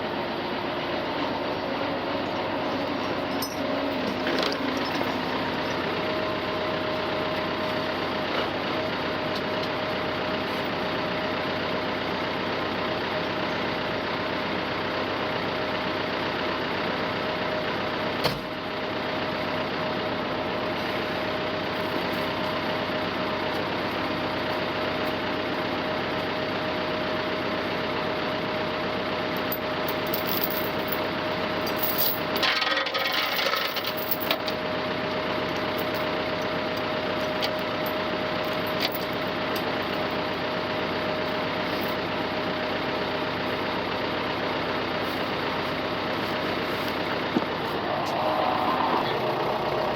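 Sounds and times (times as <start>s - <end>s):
farm machine engine whining: 0.0s - 49.9s.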